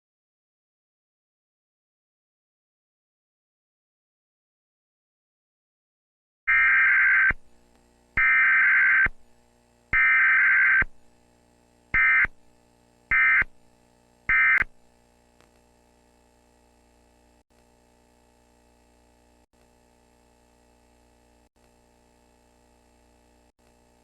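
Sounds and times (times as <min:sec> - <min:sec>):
digital data tone bursts: 0:06.5 - 0:07.4, 0:08.2 - 0:09.2, 0:10.0 - 0:10.9, 0:12.0 - 0:12.3, 0:13.1 - 0:13.5, 0:14.3 - 0:14.7.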